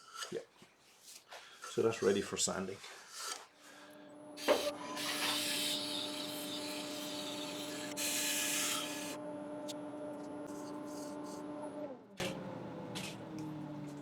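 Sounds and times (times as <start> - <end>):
wood lathe humming: 4.1 - 11.8.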